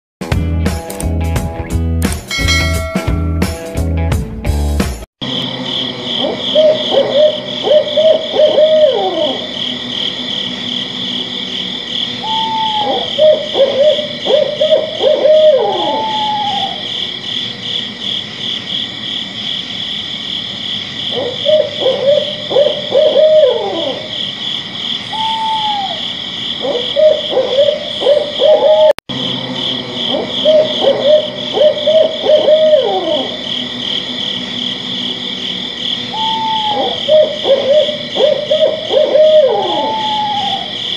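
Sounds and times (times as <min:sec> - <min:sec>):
night insects chorus: 0:05.2 - 0:40.9
owl hooting: 0:05.7 - 0:18.3, 0:21.0 - 0:29.0, 0:29.7 - 0:40.9.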